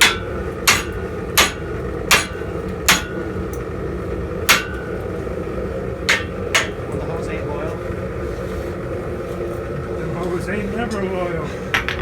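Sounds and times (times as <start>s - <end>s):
hammer strikes on anvil: 0.0s - 3.4s, 4.5s - 5.0s, 6.1s - 7.0s.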